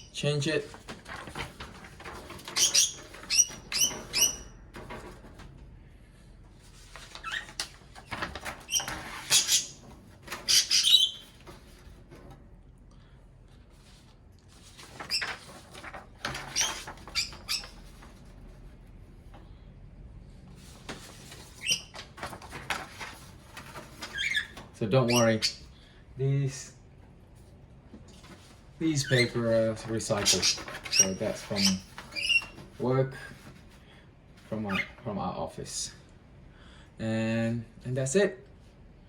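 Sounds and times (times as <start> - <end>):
paper rustling: 0.6 - 5.5, 6.6 - 12.2, 13.5 - 18.7, 20.6 - 25.4, 28.0 - 33.8
budgerigars chirping and squeaking: 2.5 - 4.5, 10.5 - 11.3, 25.1 - 25.6, 30.2 - 32.5.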